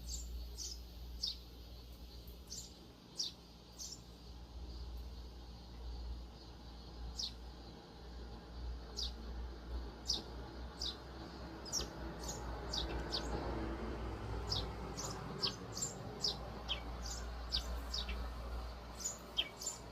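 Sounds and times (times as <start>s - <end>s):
sparrows chirping: 0.0s - 19.9s.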